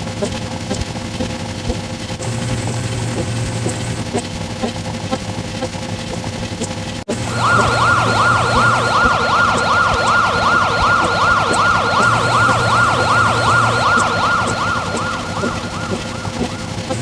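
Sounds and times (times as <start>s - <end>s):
engine-like hum: 0.0s - 17.0s
siren yelping: 7.1s - 17.0s.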